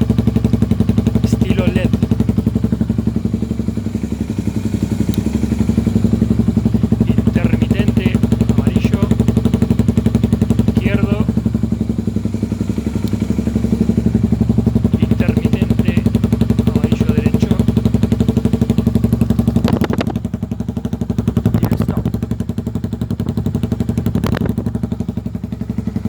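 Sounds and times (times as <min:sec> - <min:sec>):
motorcycle engine idling: 0:00.0 - 0:26.0
sharp clicks: 0:13.0 - 0:13.2.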